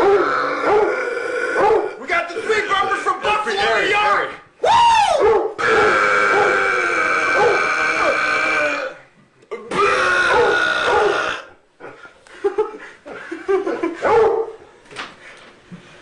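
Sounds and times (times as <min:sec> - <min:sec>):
loud drawn-out burps: 0:05.6 - 0:11.6
choppy laughter: 0:11.8 - 0:14.1.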